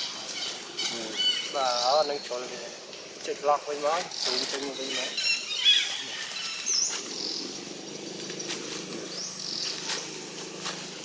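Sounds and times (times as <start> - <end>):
high whistled animal calls: 0.0 - 2.0, 4.8 - 7.6
steady low hum: 0.0 - 11.0.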